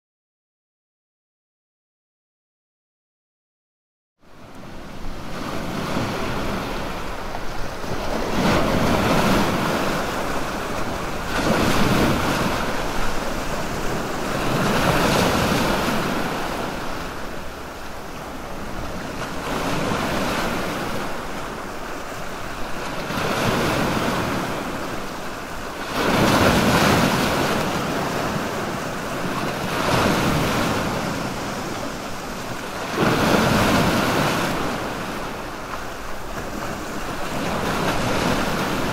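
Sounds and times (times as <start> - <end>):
sea waves washing in: 4.2 - 38.9.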